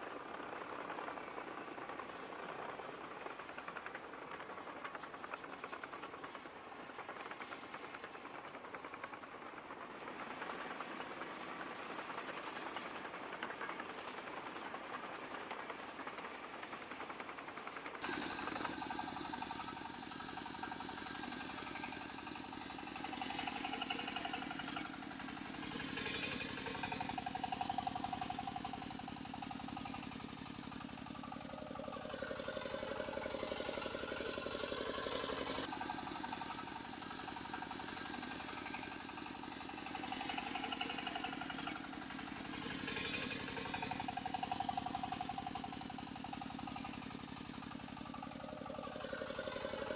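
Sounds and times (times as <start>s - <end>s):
model vehicle engine chugging: 0.0s - 49.9s
held tones rising and falling: 31.4s - 44.8s.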